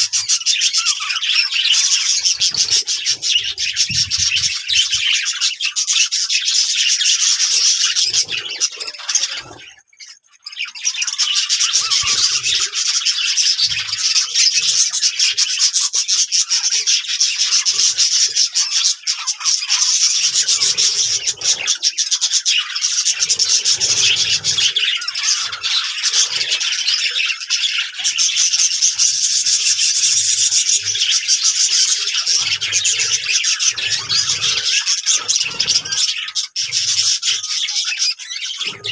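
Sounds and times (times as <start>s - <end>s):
parrots twittering: 0.0s - 38.9s.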